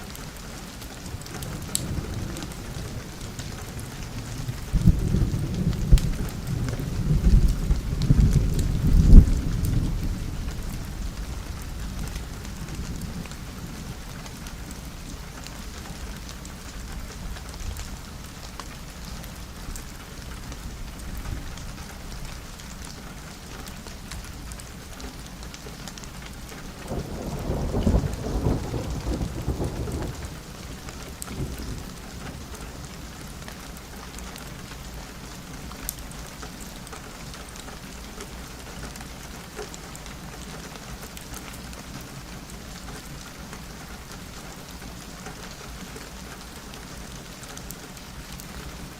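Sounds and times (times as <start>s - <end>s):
rain on a window: 0.0s - 48.9s
thunder rumble: 1.2s - 14.3s, 26.8s - 32.6s.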